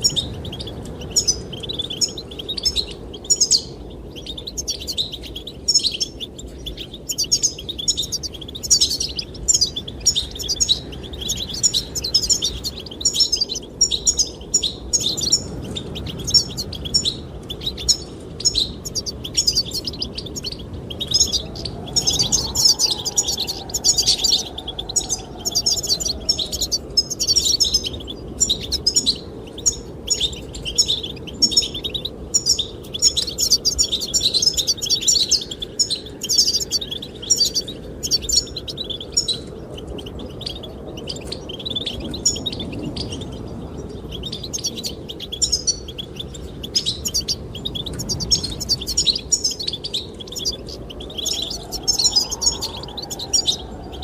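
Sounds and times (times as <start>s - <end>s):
goldfinch twittering song: 0.0s - 54.0s
wind rushing: 18.2s - 30.1s, 50.0s - 54.0s.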